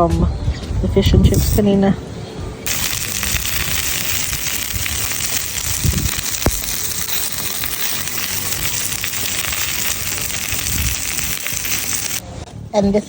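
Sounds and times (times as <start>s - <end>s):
sausages sizzling: 2.7s - 12.2s.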